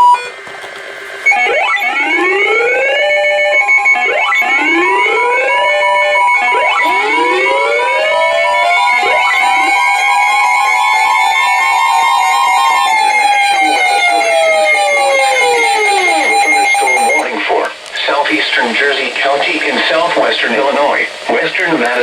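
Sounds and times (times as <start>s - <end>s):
held electronic beeps: 6.2s - 17.4s.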